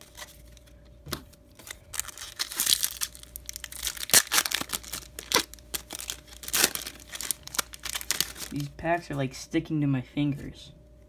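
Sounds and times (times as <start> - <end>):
wrapper tearing and crinkling: 1.6 - 8.7.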